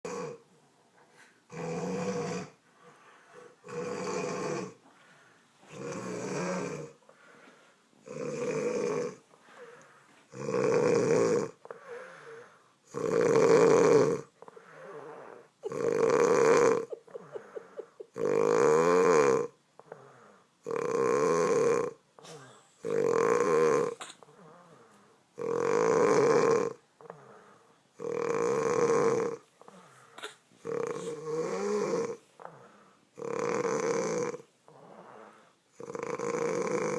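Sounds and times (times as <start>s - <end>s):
woman snoring: 0.1s - 0.4s, 1.5s - 2.6s, 3.6s - 4.8s, 5.7s - 7.0s, 8.0s - 9.2s, 10.3s - 24.8s, 25.4s - 30.0s, 30.6s - 36.9s
faint breathing: 2.6s - 3.6s, 4.8s - 5.8s, 6.9s - 8.0s, 9.2s - 10.3s, 11.6s - 12.8s, 14.3s - 18.1s, 19.8s - 20.6s, 24.0s - 25.3s, 27.0s - 27.9s, 29.5s - 31.4s, 32.3s - 33.2s, 34.6s - 35.7s.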